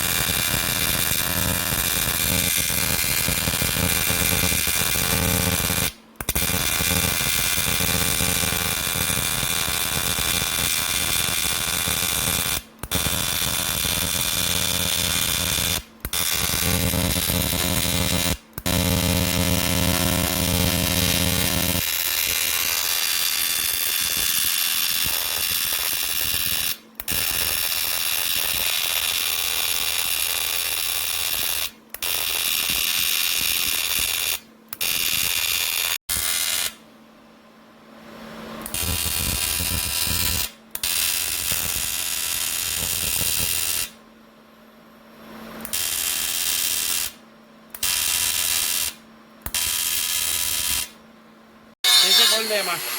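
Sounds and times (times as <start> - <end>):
machine whining: 13.7 - 21.9.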